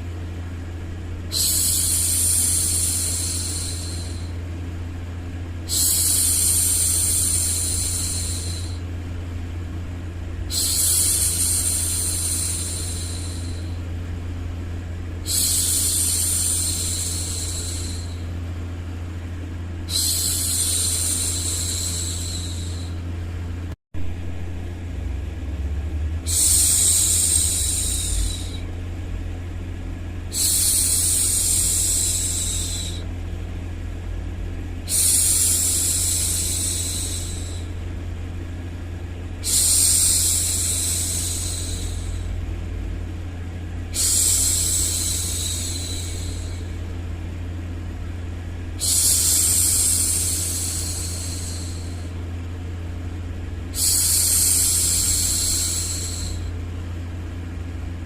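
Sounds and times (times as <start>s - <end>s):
steady low background noise: 0.0s - 58.0s
woman hushing shhh: 1.3s - 4.4s, 5.7s - 8.9s, 10.5s - 13.9s, 15.2s - 18.4s, 19.8s - 23.1s, 26.2s - 28.7s, 30.3s - 33.1s, 34.8s - 37.8s, 39.4s - 42.4s, 43.8s - 47.6s, 48.6s - 52.6s, 53.7s - 56.6s.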